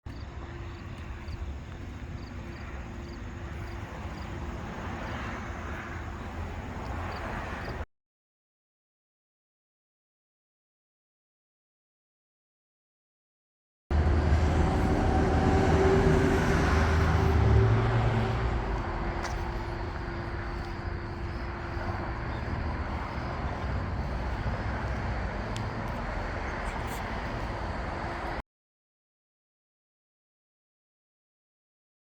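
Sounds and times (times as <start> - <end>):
engine running: 13.9 - 28.4.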